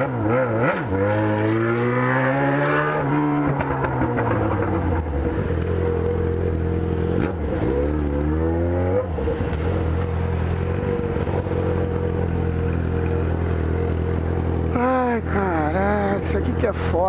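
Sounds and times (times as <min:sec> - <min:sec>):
motorcycle engine idling and revving: 0:00.0 - 0:17.0.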